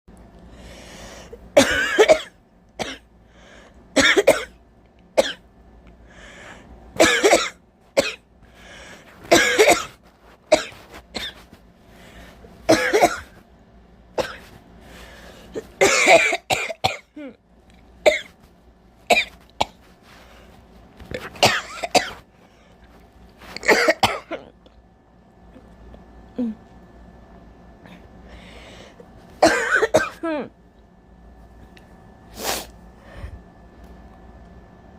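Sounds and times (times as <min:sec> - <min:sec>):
person coughing: 0:01.6 - 0:03.1, 0:04.0 - 0:04.6, 0:07.0 - 0:08.2, 0:09.3 - 0:11.4, 0:12.7 - 0:13.3, 0:14.2 - 0:14.5, 0:15.5 - 0:17.4, 0:21.1 - 0:22.2, 0:23.6 - 0:24.6, 0:29.4 - 0:30.6.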